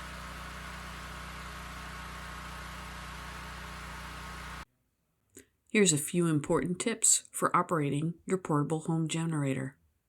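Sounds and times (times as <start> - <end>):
generator engine running: 0.0 - 4.6.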